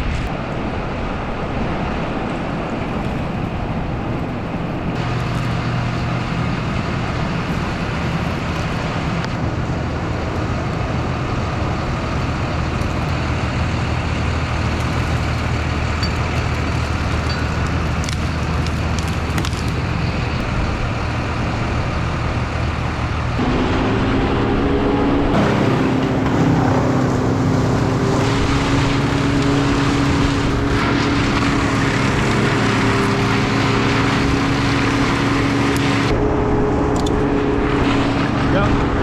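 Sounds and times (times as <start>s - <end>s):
heavy engines running: 0.0s - 39.0s
higher-pitched engine note: 20.4s - 39.0s.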